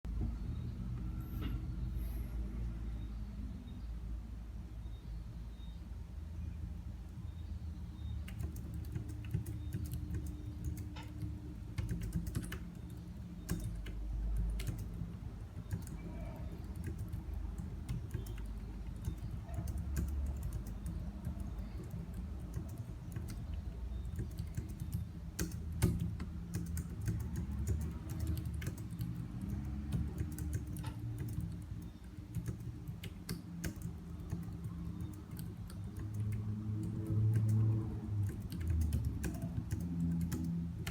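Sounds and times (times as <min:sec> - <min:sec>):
fast keyboard typing: 0:08.2 - 0:40.9.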